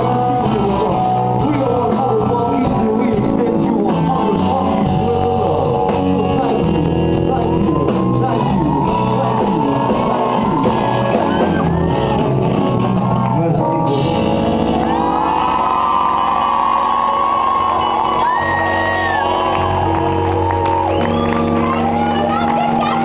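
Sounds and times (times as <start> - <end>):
loud singing: 0.0 - 12.7
guitar: 0.0 - 23.0
live rock band playing: 0.0 - 23.0.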